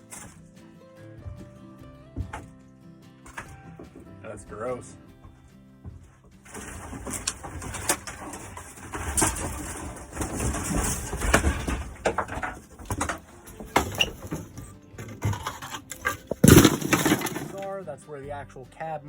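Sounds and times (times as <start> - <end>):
ceiling panels cracking and breaking: 6.4 - 17.7.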